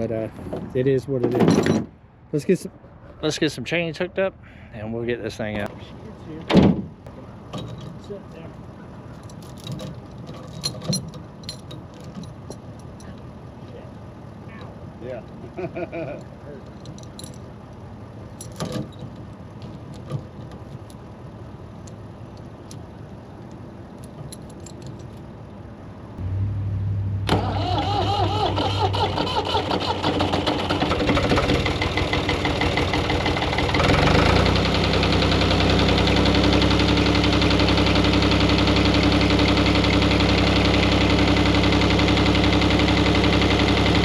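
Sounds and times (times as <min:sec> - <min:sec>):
vehicle engine running: 0:26.2 - 0:44.0.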